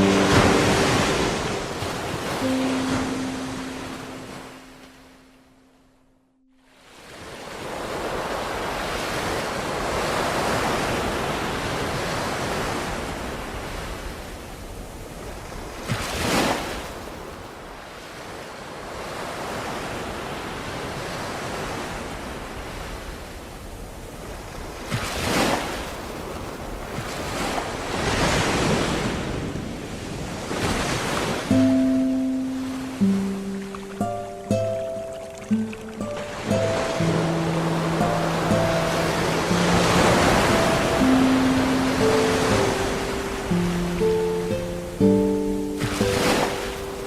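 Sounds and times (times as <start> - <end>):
wave splashes: 0.0 - 5.4, 23.9 - 47.0
ocean waves washing in: 0.0 - 47.0.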